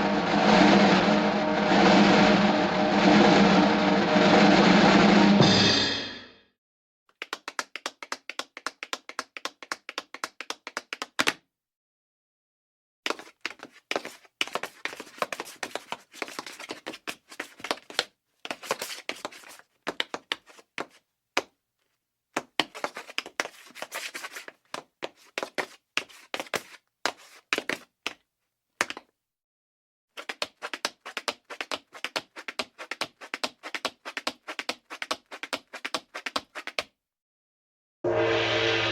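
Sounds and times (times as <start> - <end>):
tap dance metal taps on hard floor: 7.1 - 11.4, 30.2 - 36.9.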